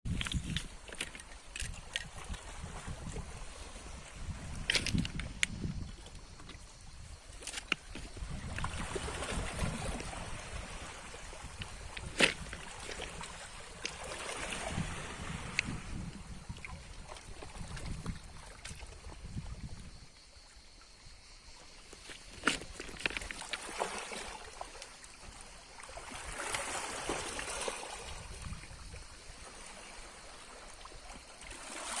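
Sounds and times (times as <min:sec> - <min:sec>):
water splashing against hull: 0:00.1 - 0:19.9.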